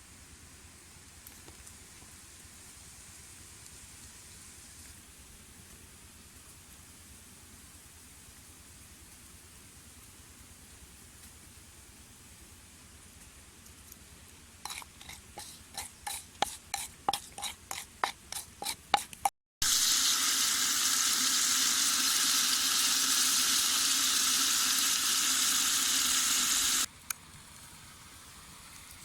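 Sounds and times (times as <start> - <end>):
loud steady hiss: 19.6 - 29.0.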